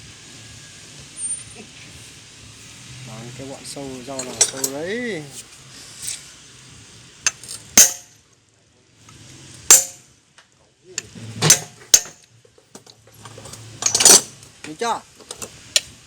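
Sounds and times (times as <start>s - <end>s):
steel tools clinking and knocking: 4.1s - 4.9s, 11.0s - 14.3s.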